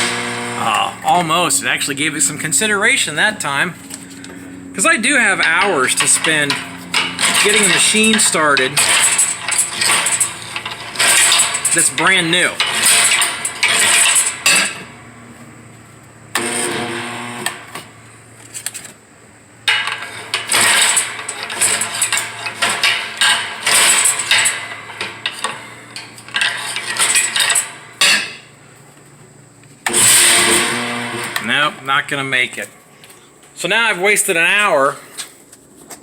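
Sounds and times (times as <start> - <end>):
air compressor struggling to start: 0.0 - 15.0, 16.3 - 18.8, 19.7 - 28.5, 29.8 - 32.0.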